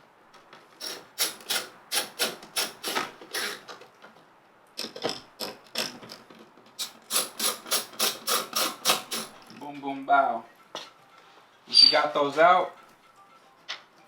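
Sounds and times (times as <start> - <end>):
ratchet wrench clicking: 0.8 - 3.6, 6.8 - 9.4.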